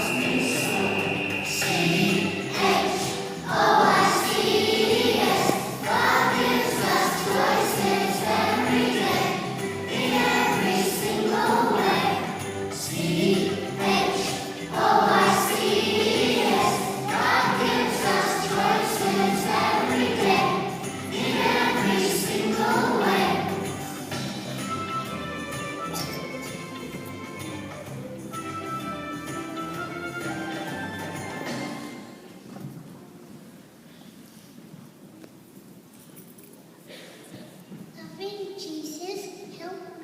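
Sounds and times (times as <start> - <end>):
children singing in unison: 0.0 - 23.8.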